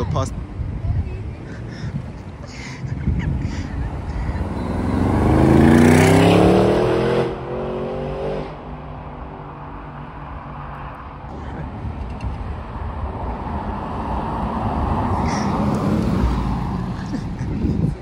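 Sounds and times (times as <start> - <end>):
traffic noise: 0.0 - 18.0
car engine accelerating hard: 4.3 - 8.7.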